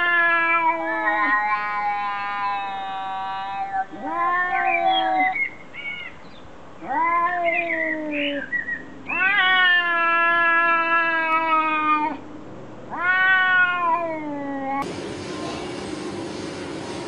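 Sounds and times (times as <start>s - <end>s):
cat meowing: 0.0s - 5.4s, 6.8s - 8.5s, 9.1s - 12.2s, 12.9s - 14.8s.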